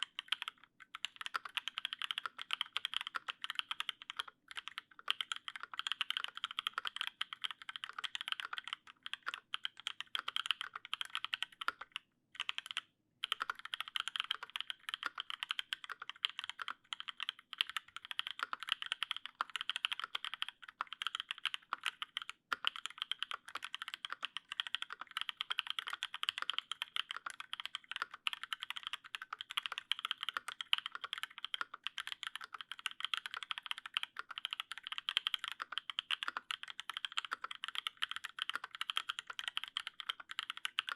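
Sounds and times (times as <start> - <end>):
fast typing on mechanical keyboard: 0.0 - 40.9.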